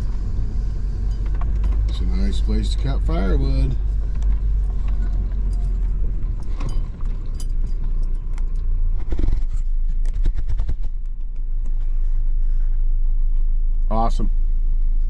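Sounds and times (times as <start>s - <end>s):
engine and road rumble: 0.0s - 15.0s
knocks and rattles: 4.0s - 11.4s.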